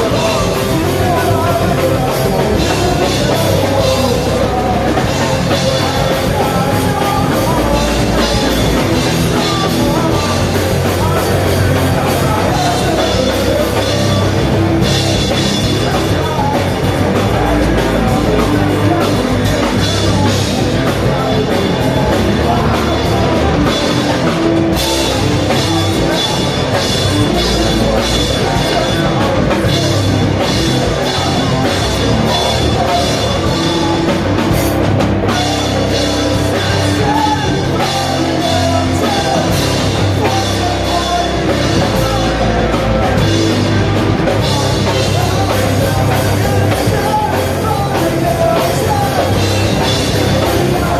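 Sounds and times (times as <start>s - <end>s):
loud rock music: 0.0s - 50.9s
person singing: 0.0s - 50.9s.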